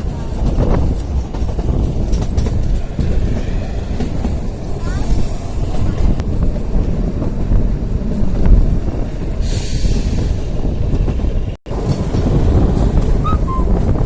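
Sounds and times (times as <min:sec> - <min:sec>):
train carriages rumbling on track: 0:00.0 - 0:14.0.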